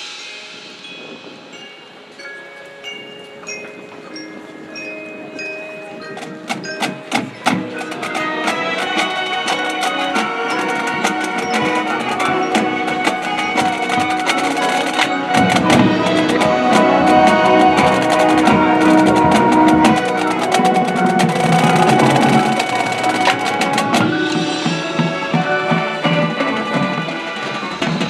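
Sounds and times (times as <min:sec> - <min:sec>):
ringing mallet percussion notes: 0:00.0 - 0:27.5
sharp percussion clicks: 0:06.0 - 0:25.0
marching band playing: 0:06.1 - 0:28.0.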